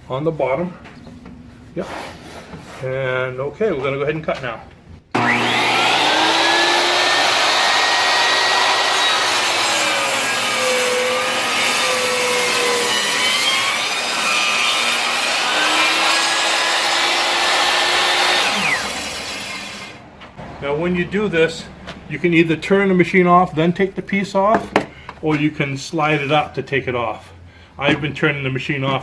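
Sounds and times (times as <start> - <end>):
power saw cutting wood: 5.1 - 20.0.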